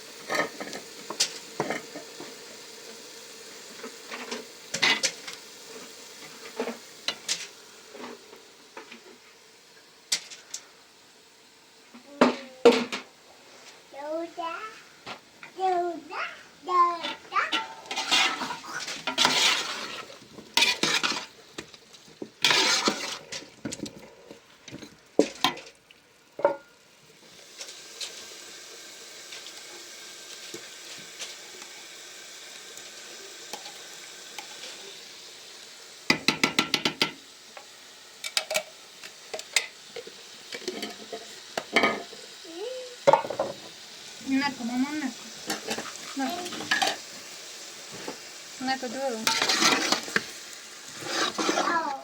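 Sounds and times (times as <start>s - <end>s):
sizzling hiss: 0.0s - 52.0s
pots and utensils clattering: 0.2s - 2.4s, 3.8s - 8.2s, 12.2s - 13.1s, 17.0s - 25.8s, 26.4s - 26.8s, 36.1s - 37.2s, 38.2s - 42.2s, 43.0s - 43.7s, 45.4s - 47.1s, 49.2s - 52.0s.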